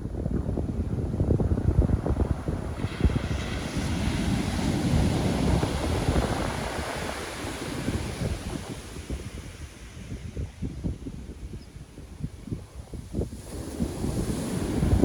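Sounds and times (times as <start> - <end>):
wind buffeting microphone: 0.0 - 15.0
ocean wave breaking: 1.5 - 9.9, 13.3 - 15.0.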